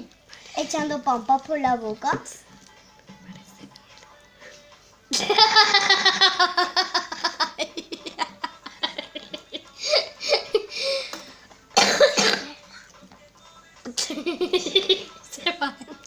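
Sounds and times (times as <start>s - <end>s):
child laughing: 5.1s - 11.0s, 14.0s - 16.0s.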